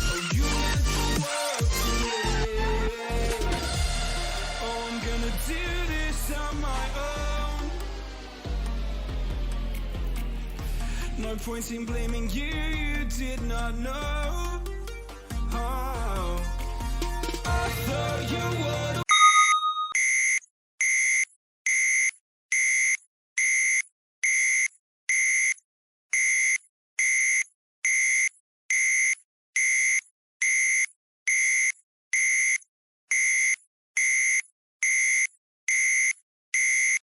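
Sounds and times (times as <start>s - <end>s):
timer alarm beeping: 19.1s - 25.6s, 26.2s - 37.0s.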